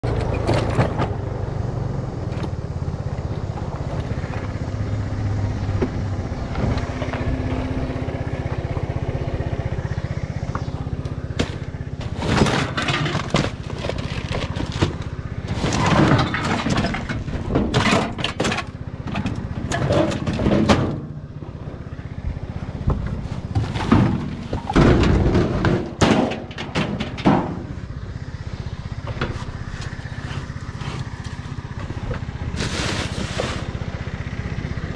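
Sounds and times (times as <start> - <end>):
low engine hum: 0.0 - 34.9
copper wire bundles slapping: 11.3 - 18.7, 29.3 - 33.8.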